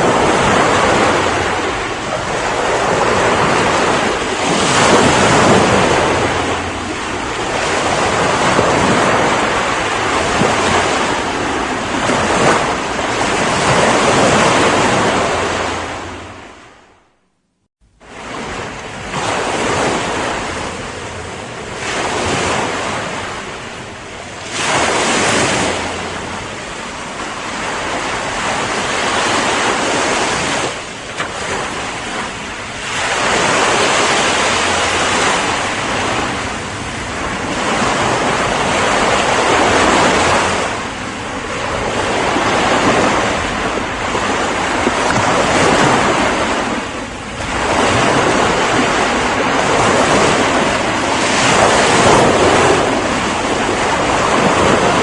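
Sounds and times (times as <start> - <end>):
ocean waves breaking on shore: 0.0 - 17.2, 17.9 - 55.0
wind: 0.0 - 55.0.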